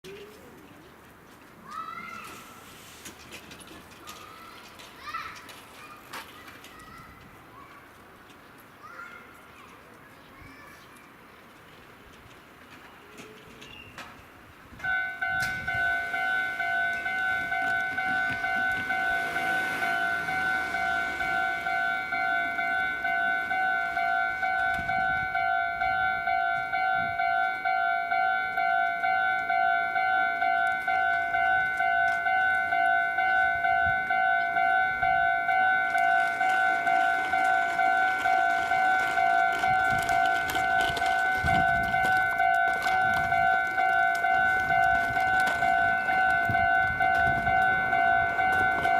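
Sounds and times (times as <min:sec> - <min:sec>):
level crossing warning bell: 0:14.4 - 0:48.9.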